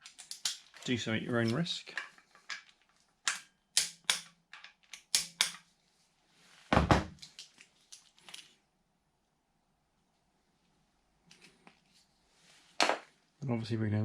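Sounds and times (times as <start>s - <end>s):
sharp metallic tool clicks: 3.3s - 4.3s, 5.0s - 5.6s.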